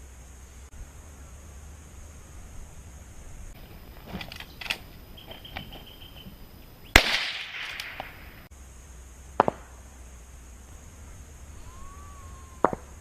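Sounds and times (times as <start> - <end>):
distant rifle shots echoing: 6.8 - 8.5.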